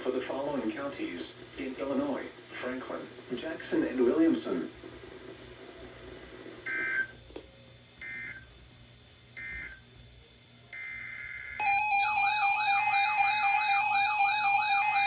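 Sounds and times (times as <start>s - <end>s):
longer data burst: 11.6s - 15.0s
short data tone bursts: 11.6s - 15.0s
warbling electronic alert tone: 11.6s - 15.0s.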